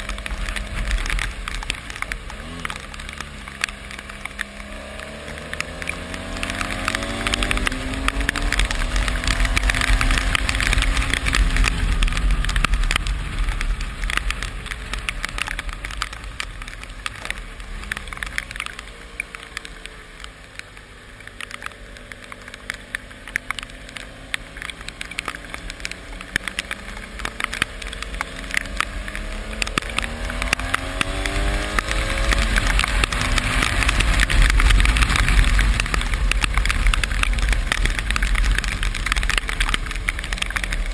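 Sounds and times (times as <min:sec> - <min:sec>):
motorcycle engine: 0:00.0 - 0:40.9
raindrops crackling: 0:00.0 - 0:40.9.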